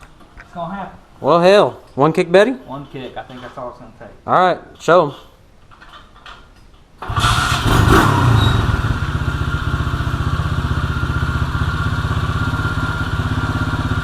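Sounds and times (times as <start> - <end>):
motorcycle engine kick-started: 7.0 - 11.8
motorcycle engine idling: 8.6 - 14.0.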